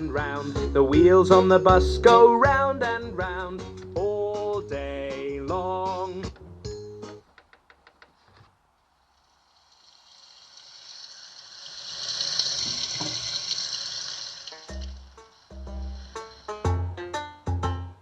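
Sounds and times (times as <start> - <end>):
children's song: 0.0 - 6.4
rushing hiss: 9.1 - 16.8.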